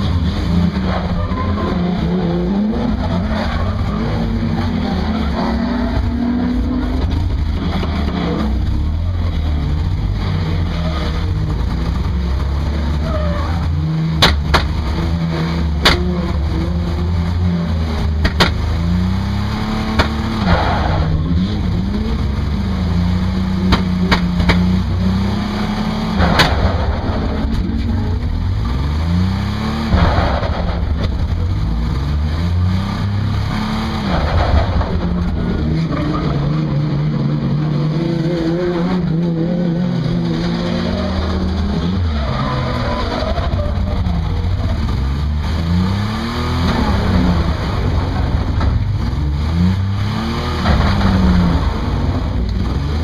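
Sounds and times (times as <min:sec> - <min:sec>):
car engine revving: 0:00.0 - 0:53.0
sharp knocks: 0:14.2 - 0:14.8, 0:18.2 - 0:18.7, 0:20.0 - 0:20.5, 0:23.7 - 0:24.7.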